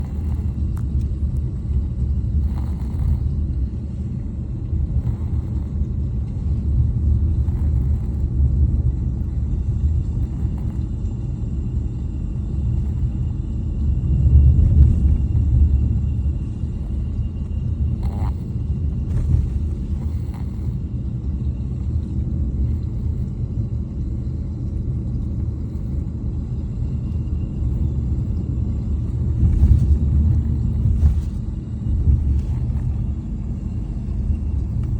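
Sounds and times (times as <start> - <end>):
toddler snoring: 0.0 - 0.8, 1.4 - 3.4, 4.8 - 6.5, 7.3 - 8.3, 10.1 - 11.0, 12.7 - 13.2, 18.0 - 20.9
car cabin road rumble: 0.0 - 34.9.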